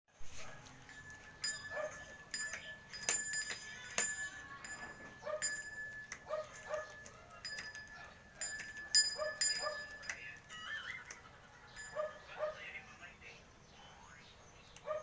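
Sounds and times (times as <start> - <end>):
small bell ringing: 0.7 - 12.3.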